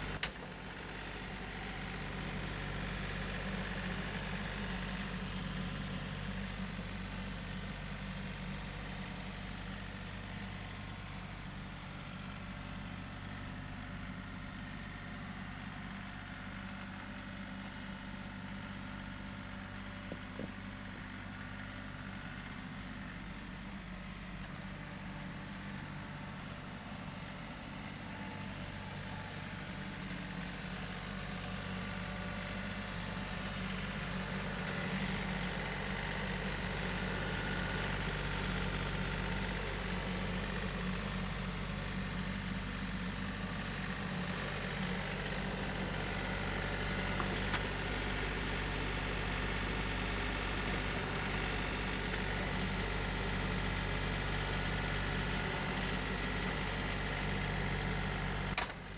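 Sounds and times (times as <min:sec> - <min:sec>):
tractor engine running: 0:00.0 - 0:58.9
brief click: 0:58.6 - 0:58.8.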